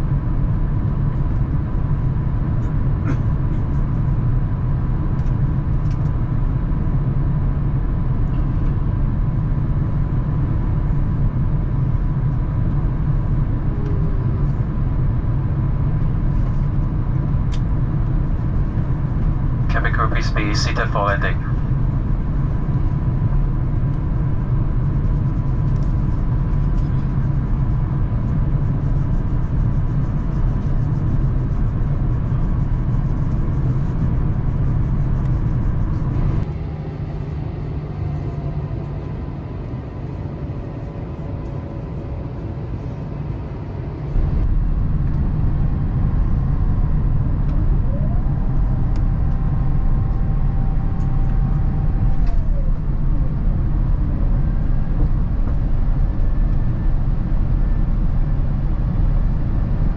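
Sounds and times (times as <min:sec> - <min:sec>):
airplane cabin engine rumble: 0:00.0 - 0:59.9
faint whine: 0:18.2 - 0:59.9.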